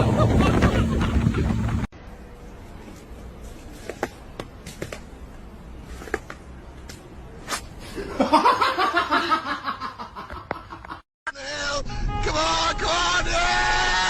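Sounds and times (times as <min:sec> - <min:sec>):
person laughing: 0:00.0 - 0:01.6.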